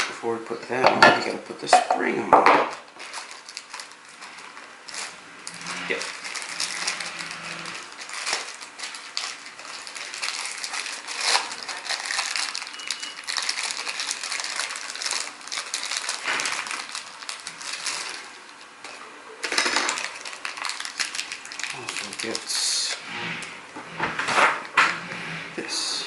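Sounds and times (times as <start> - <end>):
hands rustling small parts: 3.0 - 18.7.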